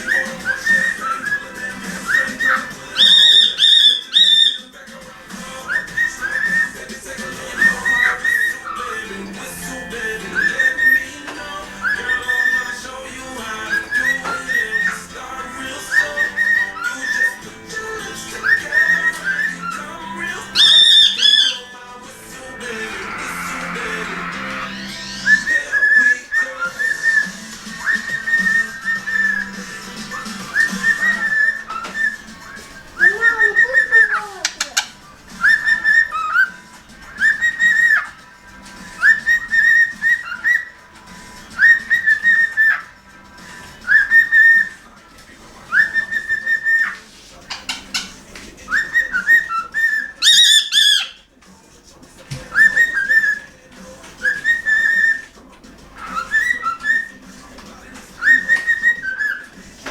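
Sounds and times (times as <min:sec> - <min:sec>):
sharp bright bird call: 0:00.0 - 0:04.8, 0:15.8 - 0:21.8, 0:50.2 - 0:51.2
cockatiel whistling a tune: 0:00.0 - 0:51.3, 0:52.3 - 0:59.9.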